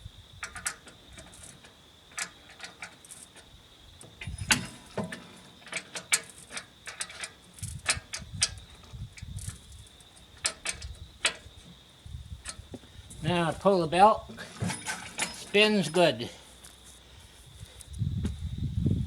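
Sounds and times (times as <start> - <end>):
wrench and bolt clicking: 0.4 - 3.5, 4.2 - 9.6.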